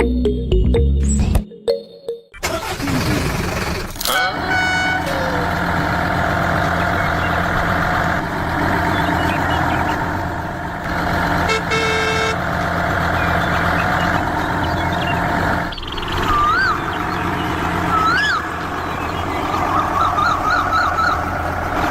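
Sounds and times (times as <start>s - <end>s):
vehicle engine running: 2.4s - 21.9s
horn honk: 4.0s - 7.5s, 10.9s - 12.6s.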